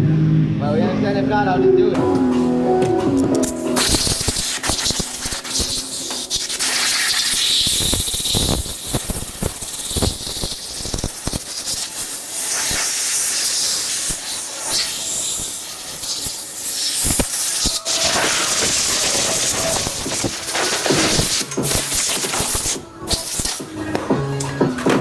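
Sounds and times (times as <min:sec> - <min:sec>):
hissing rush of air: 0:03.4 - 0:23.7.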